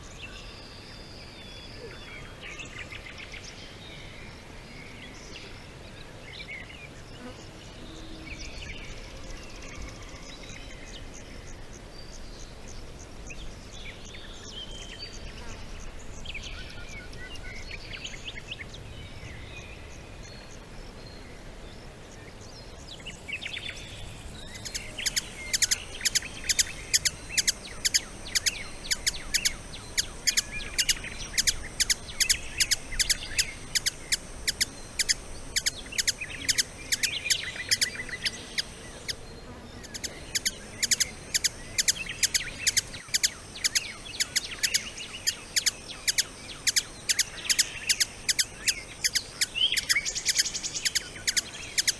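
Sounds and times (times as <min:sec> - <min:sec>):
birds chirping: 0:24.5 - 0:51.9
steady high-pitched buzz: 0:24.5 - 0:51.9
sharp rapid chirps: 0:24.7 - 0:39.2, 0:39.9 - 0:51.9.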